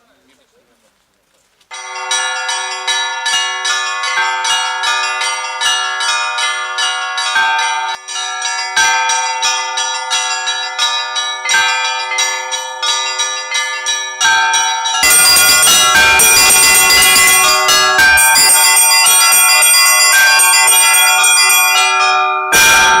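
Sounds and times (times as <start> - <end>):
large bell humming: 1.7 - 23.0
quick strokes on high bells: 7.4 - 23.0.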